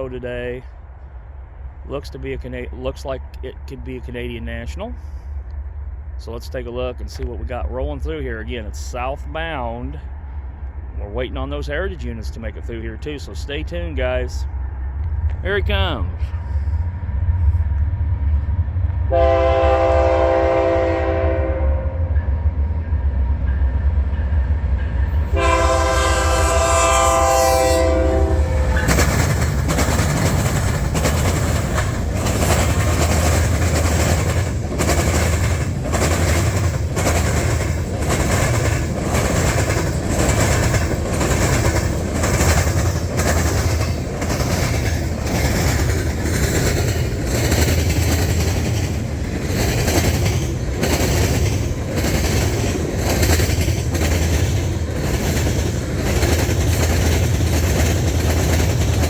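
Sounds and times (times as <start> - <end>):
diesel locomotives rumbling: 0.0 - 59.0
train air horn blasts: 19.1 - 22.2, 25.3 - 29.0
train wheels clicking over rail joints: 22.1 - 59.0.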